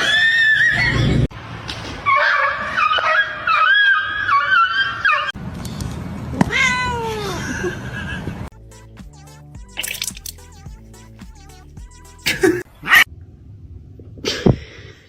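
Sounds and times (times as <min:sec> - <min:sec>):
music: 0:08.5 - 0:12.6.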